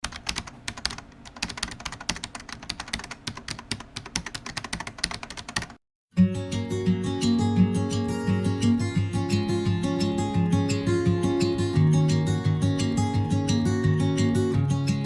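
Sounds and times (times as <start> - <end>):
keyboard typing: 0.0 - 5.8
strummed acoustic guitar music: 6.2 - 15.0.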